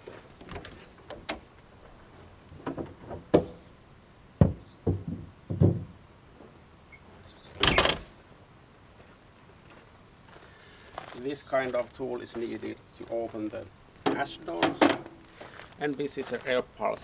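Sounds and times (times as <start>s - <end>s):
metal knocks and clanks: 2.6s - 3.6s, 4.4s - 6.0s, 14.0s - 15.2s.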